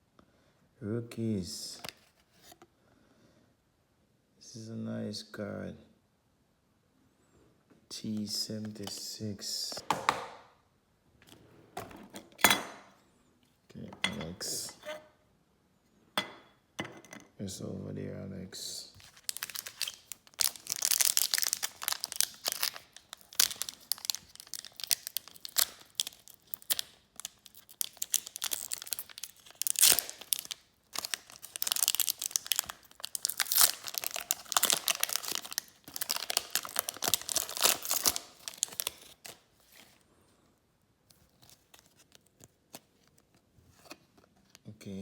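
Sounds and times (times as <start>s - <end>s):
foil wrapper tearing and crinkling: 19.0s - 39.5s.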